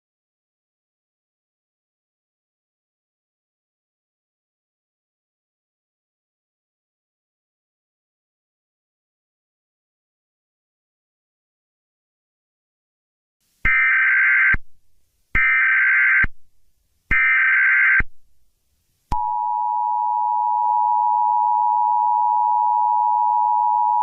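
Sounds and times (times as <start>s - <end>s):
two-tone attention signal: 19.2s - 24.0s.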